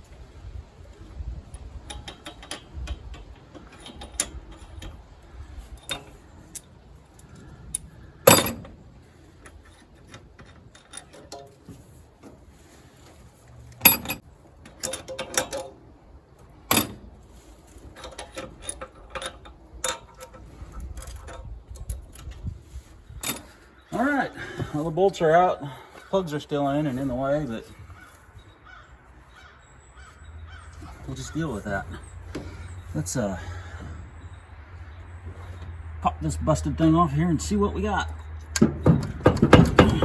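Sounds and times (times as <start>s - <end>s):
loud metal clanks: 8.2s - 8.8s, 38.2s - 40.0s.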